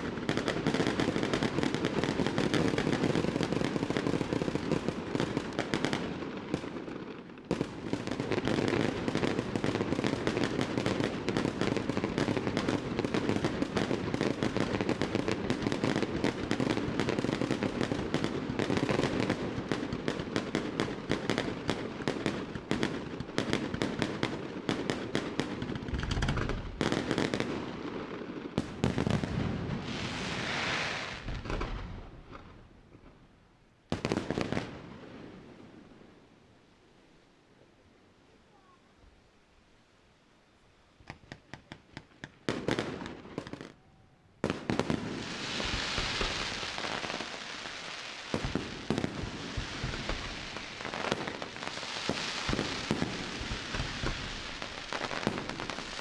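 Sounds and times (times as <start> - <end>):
deep fireworks booms: 0.0 - 33.2, 48.3 - 56.0
fireworks bangs and crackles: 0.0 - 33.3, 33.9 - 35.8, 41.0 - 56.0
fireworks hiss: 29.1 - 32.1, 45.1 - 56.0.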